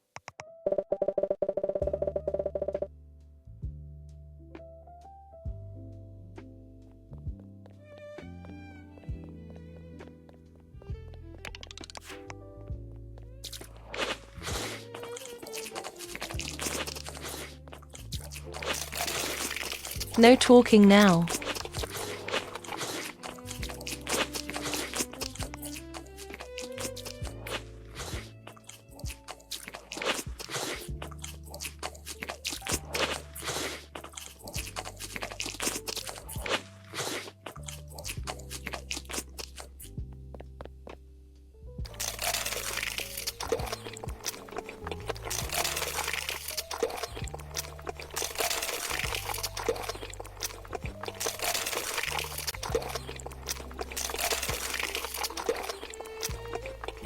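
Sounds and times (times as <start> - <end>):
background music with bass: 1.8 - 29.6, 30.2 - 57.0
crunchy food being chewed: 13.4 - 40.8, 41.9 - 57.0.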